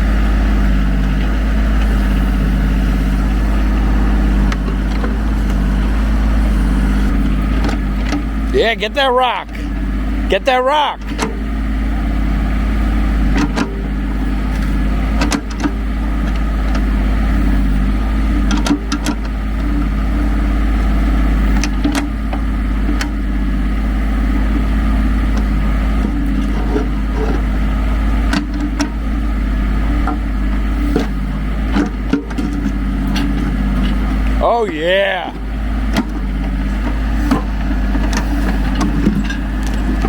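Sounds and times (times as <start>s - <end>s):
tractor diesel engine running: 0.0s - 40.0s
bucket and linkage clanks: 10.4s - 11.5s, 13.3s - 16.9s, 18.4s - 19.4s, 25.2s - 27.6s, 28.2s - 29.1s, 30.0s - 40.0s.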